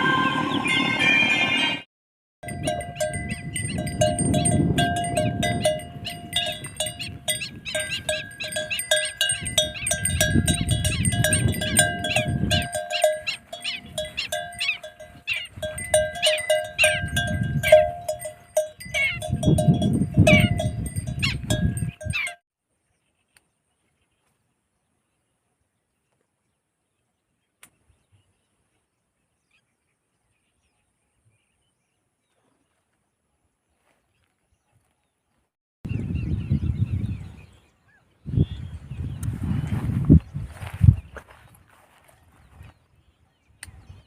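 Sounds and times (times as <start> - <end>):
livestock bells clanking: 2.4 - 22.4.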